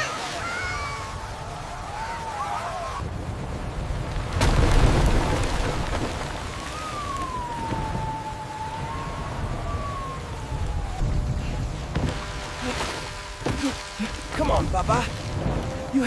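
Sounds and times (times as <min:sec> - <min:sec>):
heavy rain: 0:00.0 - 0:16.0
low rumbling: 0:00.7 - 0:16.0
long wailing tone: 0:06.5 - 0:14.1.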